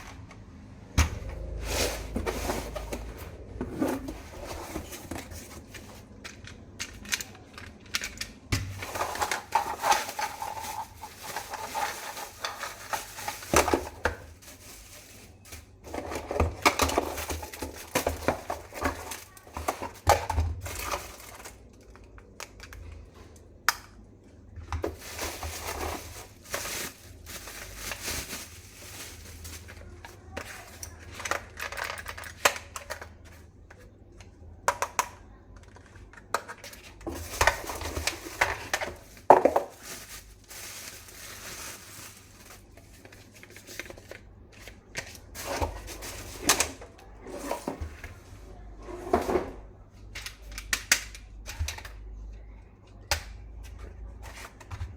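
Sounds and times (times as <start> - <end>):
plastic toy parts clattering: 3.8 - 23.0, 24.8 - 33.3.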